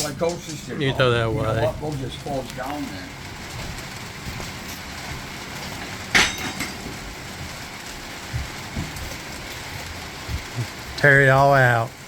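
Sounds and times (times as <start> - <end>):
steady background hiss: 0.0 - 12.0
sharp metallic clang: 6.1 - 6.8.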